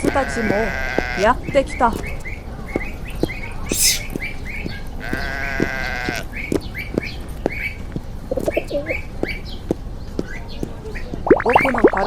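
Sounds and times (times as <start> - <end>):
wavering animal bleat: 0.0 - 1.4, 3.7 - 4.0, 5.0 - 6.3
short chirps: 3.7 - 4.1.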